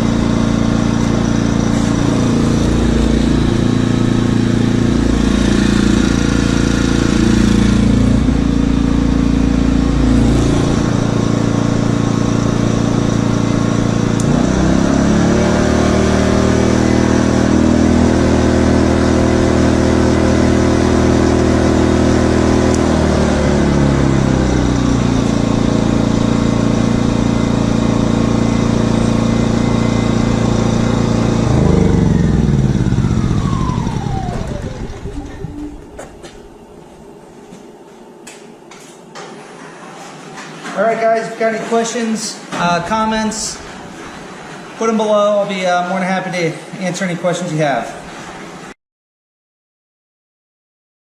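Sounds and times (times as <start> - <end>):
falling whine: 0.0 - 37.1
generator engine running: 0.0 - 37.1.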